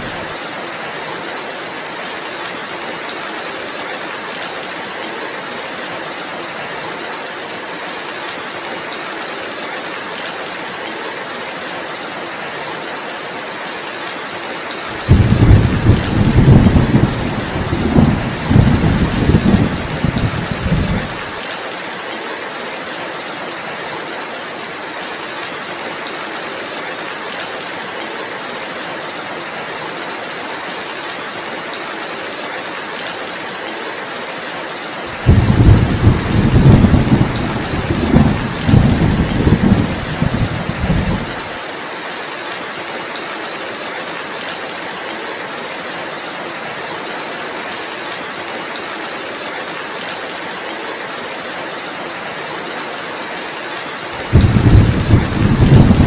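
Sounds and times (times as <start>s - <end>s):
heavy rain: 0.0s - 56.0s
thunder rumbling: 15.0s - 21.2s, 35.2s - 41.5s, 54.2s - 56.0s.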